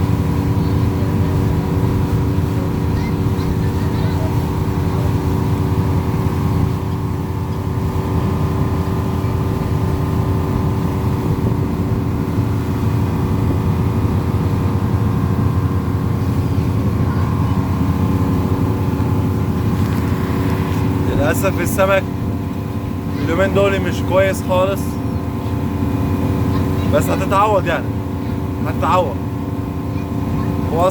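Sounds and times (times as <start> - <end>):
boat engine rumbling: 0.0 - 30.9.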